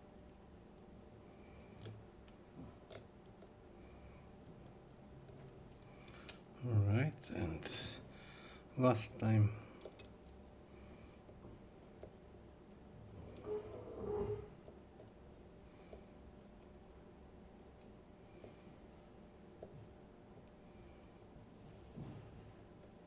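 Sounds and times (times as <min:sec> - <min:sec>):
scrape and squeak: 0:13.2 - 0:14.7.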